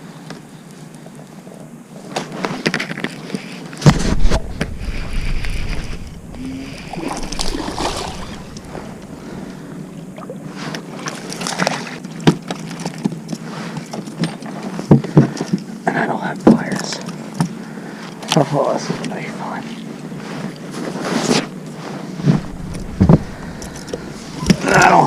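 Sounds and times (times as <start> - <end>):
heavy low thump: 3.8 - 10.2, 22.3 - 24.7
water sloshing and splashing: 3.9 - 13.8, 22.1 - 25.0.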